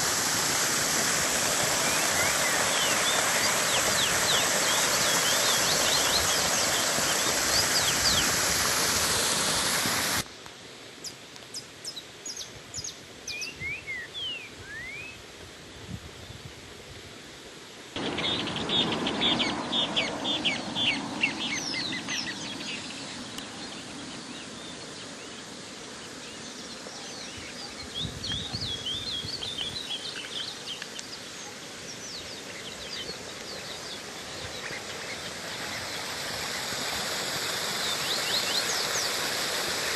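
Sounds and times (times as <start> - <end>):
water rushing over rocks: 0.0 - 10.3, 18.0 - 24.8, 27.9 - 39.9
birds chirping: 1.3 - 9.5, 18.0 - 39.9
rising whistles: 1.7 - 8.2, 18.0 - 22.9.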